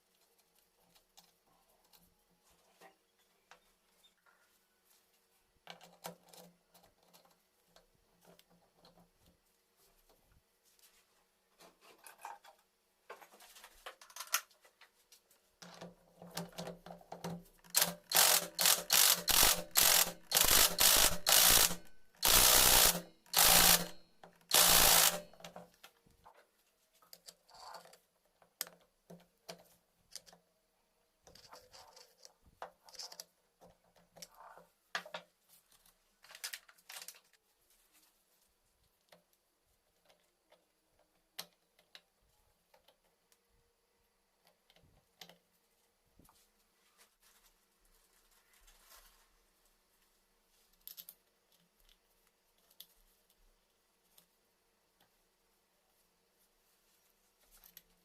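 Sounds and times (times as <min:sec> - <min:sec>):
hand tools clicking and knocking on metal: 0:15.6 - 0:26.0.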